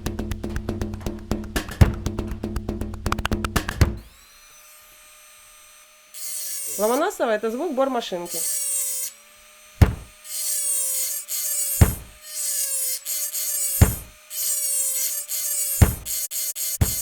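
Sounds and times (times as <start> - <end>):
deep drum thumps: 0.0 - 4.0, 9.8 - 10.2, 11.8 - 12.2, 13.8 - 14.1, 15.8 - 16.1
dental drill whirring: 4.0 - 17.0.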